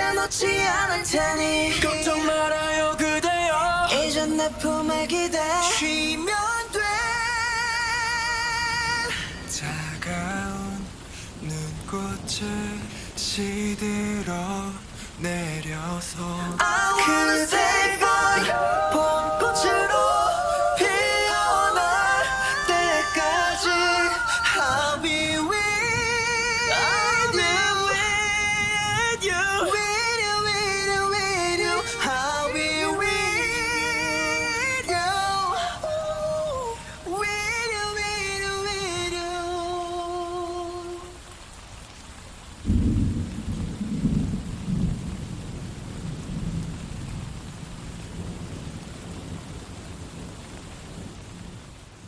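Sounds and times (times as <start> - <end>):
male voices singing in harmony: 0.0 - 41.2
rain hiss: 0.0 - 52.0
held sung note: 16.6 - 25.8, 26.6 - 28.6, 29.6 - 37.0
thunderclap rolling: 42.6 - 47.4.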